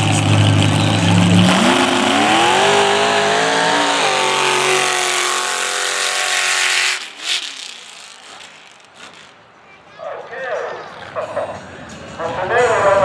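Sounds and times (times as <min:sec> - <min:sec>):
truck engine accelerating hard: 0:00.0 - 0:09.6.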